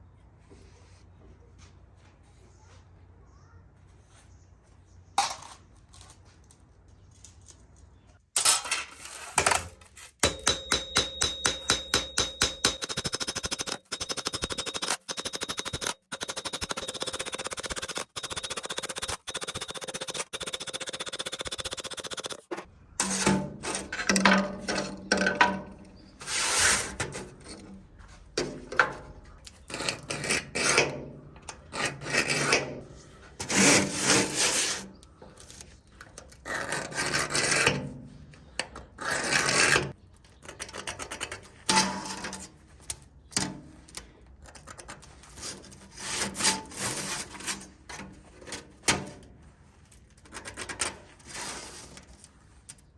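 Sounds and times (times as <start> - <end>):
file scraping back and forth: 9.0 - 24.2, 26.1 - 27.6, 29.5 - 40.0, 45.0 - 48.6, 51.2 - 52.2
steady machine noise: 12.1 - 22.6.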